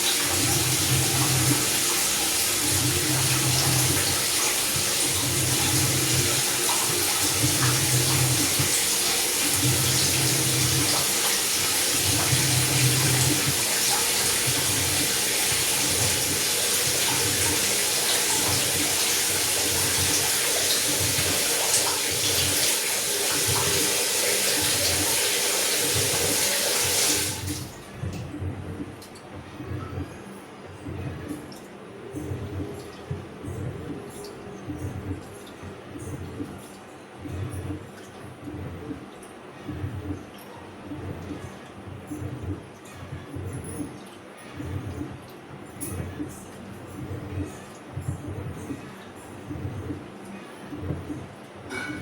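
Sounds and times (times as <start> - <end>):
water rushing into washing machine: 0.0 - 27.9
pulsing low hum: 27.9 - 43.9.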